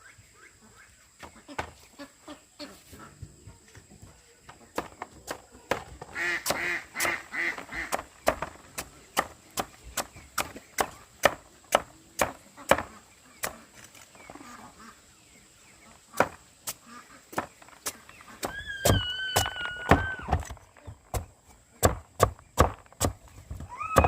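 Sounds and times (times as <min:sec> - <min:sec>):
knife chopping on wooden board: 0:04.8 - 0:13.6, 0:21.1 - 0:23.2
domestic waterfowl honking: 0:06.1 - 0:08.0, 0:14.3 - 0:15.1, 0:15.9 - 0:17.4.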